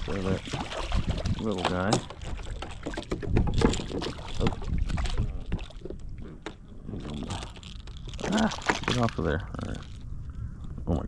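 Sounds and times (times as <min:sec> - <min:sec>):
low rumbling microphone noise: 0:02.3 - 0:11.0.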